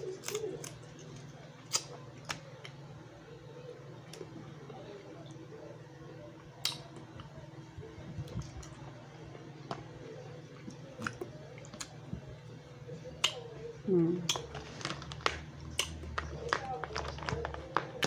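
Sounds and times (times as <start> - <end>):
soft chewing: 0.0 - 18.0
crab shell cracking: 14.3 - 18.0.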